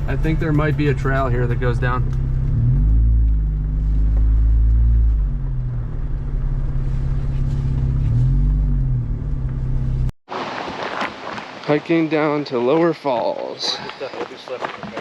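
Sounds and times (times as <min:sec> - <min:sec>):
car engine and road rumble: 0:00.0 - 0:11.6.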